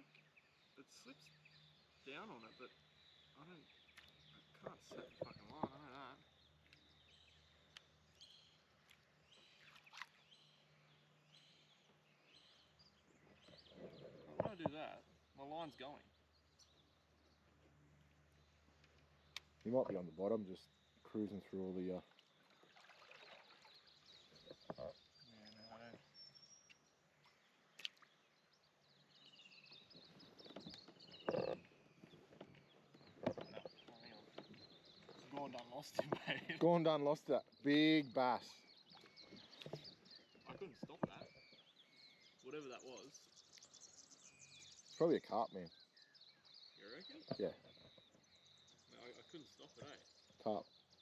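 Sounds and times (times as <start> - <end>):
bird chirping: 0.0 - 51.0
light clicks: 18.8 - 19.7.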